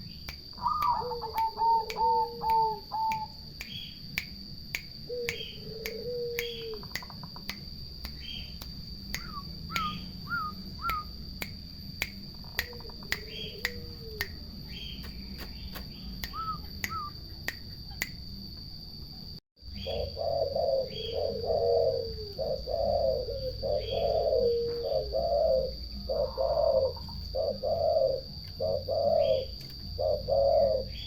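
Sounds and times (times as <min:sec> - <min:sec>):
bird chirps: 0:00.0 - 0:04.1, 0:05.1 - 0:11.2, 0:12.4 - 0:18.2, 0:19.6 - 0:31.0
steady high-pitched tone: 0:00.0 - 0:15.3
evenly spaced ticks: 0:00.0 - 0:18.7
doves cooing: 0:00.6 - 0:03.3, 0:05.1 - 0:06.9, 0:19.8 - 0:31.0.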